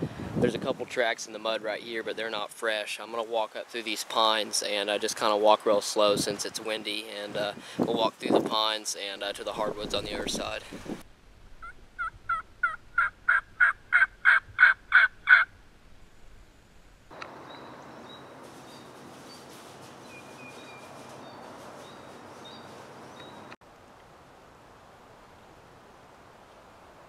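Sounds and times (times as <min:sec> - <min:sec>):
wind rushing: 0:09.6 - 0:11.0
turkey yelps: 0:11.6 - 0:15.5
songbirds chirping faintly: 0:17.1 - 0:23.6.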